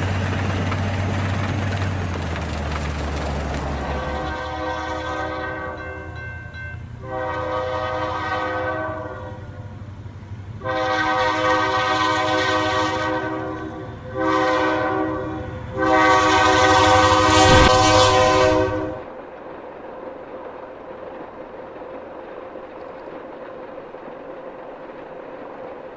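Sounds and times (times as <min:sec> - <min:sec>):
train horn blasts: 0:03.8 - 0:06.2, 0:07.0 - 0:09.7, 0:10.6 - 0:19.1
low rumble: 0:17.3 - 0:19.0.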